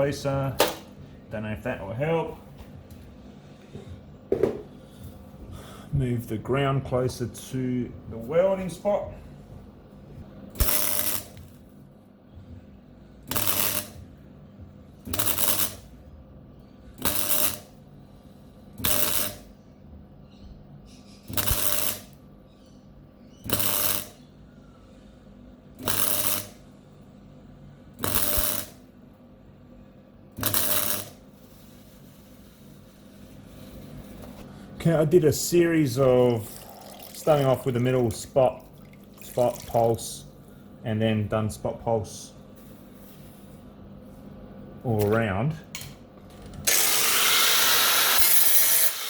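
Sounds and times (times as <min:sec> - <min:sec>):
welder arc pulses: 0:10.5 - 0:11.7, 0:13.2 - 0:14.2, 0:15.0 - 0:16.1, 0:17.0 - 0:17.8, 0:18.8 - 0:19.6, 0:21.3 - 0:22.2, 0:23.4 - 0:24.3, 0:25.7 - 0:26.7, 0:28.0 - 0:28.9, 0:30.4 - 0:34.2, 0:46.6 - 0:49.0.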